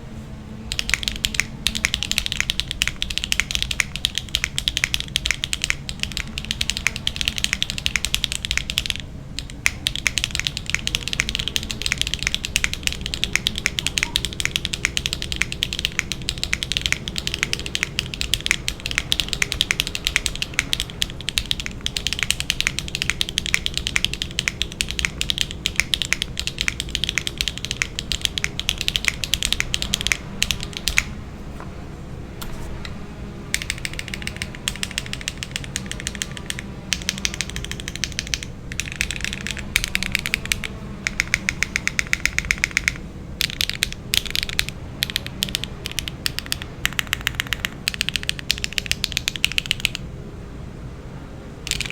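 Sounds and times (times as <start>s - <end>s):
mechanical keyboard typing: 0.7s - 31.2s, 32.4s - 50.0s, 51.7s - 51.9s.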